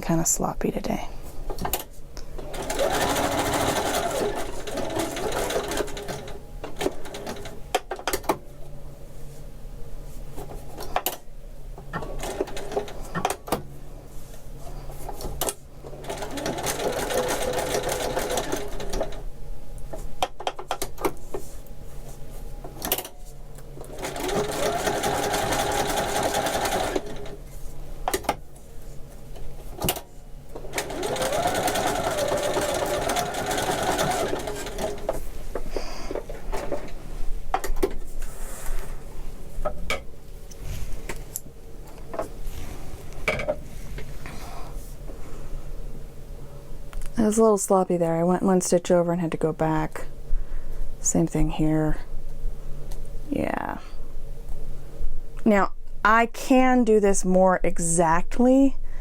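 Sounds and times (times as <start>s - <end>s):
sewing machine stitching: 2.4s - 7.6s, 16.0s - 19.2s, 23.8s - 27.4s, 30.6s - 35.2s.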